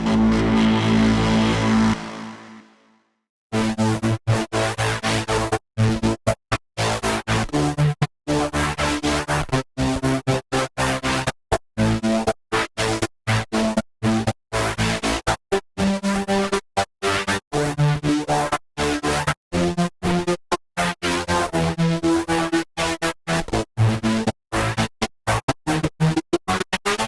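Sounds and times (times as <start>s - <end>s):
choppy electronic synth sequence: 0.0s - 2.8s.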